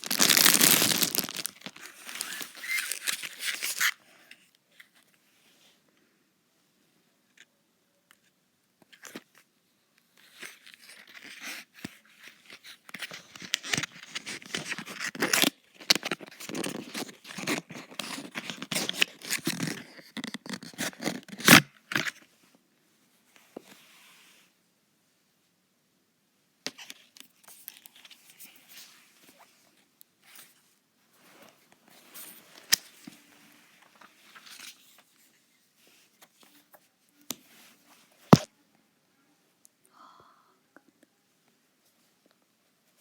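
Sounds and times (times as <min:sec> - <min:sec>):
packaging torn and crinkled: 0:00.0 - 0:04.0, 0:13.0 - 0:22.1.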